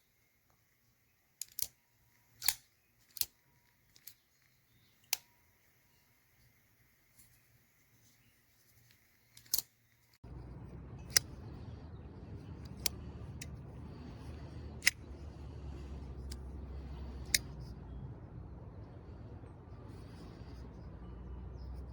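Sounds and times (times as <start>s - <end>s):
low steady hum: 10.0s - 21.9s.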